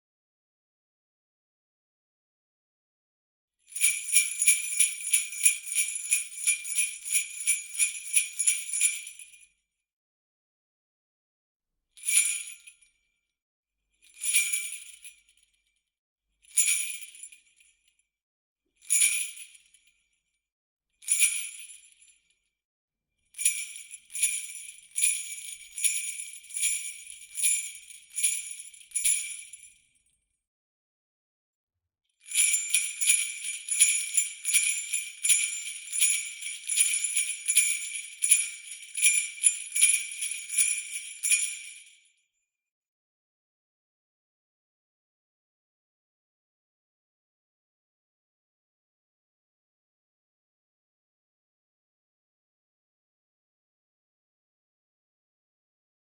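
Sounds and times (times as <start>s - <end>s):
jingle bells shaken: 3.8s - 9.2s, 23.4s - 29.6s, 32.2s - 41.9s.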